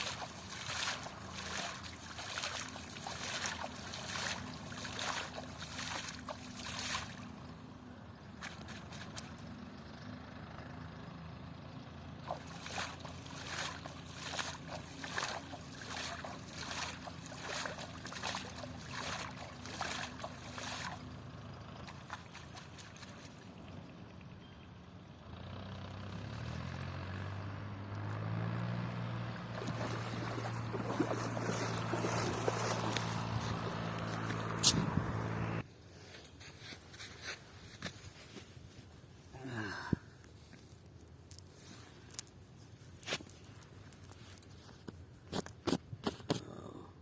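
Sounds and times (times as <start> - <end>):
louder lower engine hum: 0.0 - 35.8
engine low hum: 0.0 - 45.4, 46.2 - 47.0.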